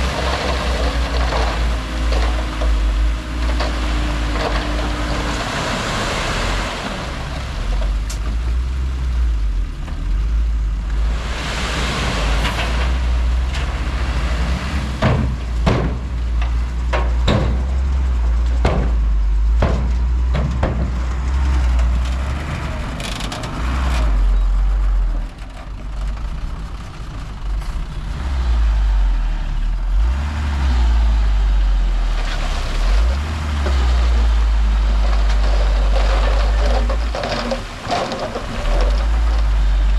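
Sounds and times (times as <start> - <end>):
diesel engine rumble: 0.0 - 39.9
metallic knocks and clanks: 15.0 - 22.3.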